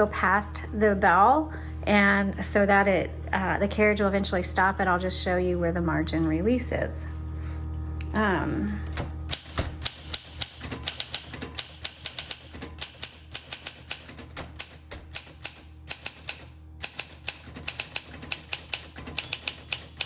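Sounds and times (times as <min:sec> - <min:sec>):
typewriter key clacks: 0:09.3 - 0:20.0.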